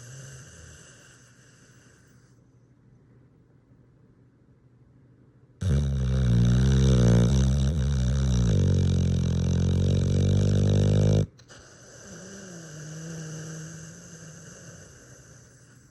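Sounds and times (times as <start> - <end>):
loud snoring: 5.6 - 15.6.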